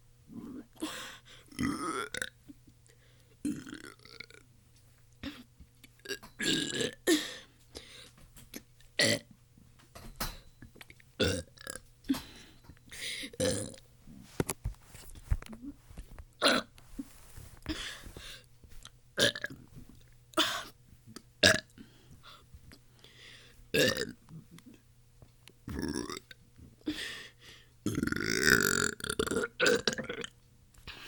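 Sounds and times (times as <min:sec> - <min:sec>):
person burping: 0:00.3 - 0:02.4, 0:03.4 - 0:04.4, 0:05.2 - 0:07.4, 0:09.0 - 0:09.3, 0:11.2 - 0:12.3, 0:13.3 - 0:13.8, 0:16.4 - 0:16.7, 0:19.2 - 0:19.6, 0:21.4 - 0:21.8, 0:23.8 - 0:24.8, 0:25.7 - 0:26.4, 0:27.9 - 0:30.4.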